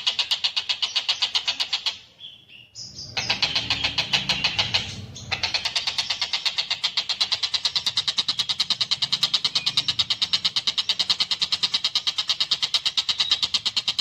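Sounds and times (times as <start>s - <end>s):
kingfisher calling harsh notes: 3.2s - 12.8s.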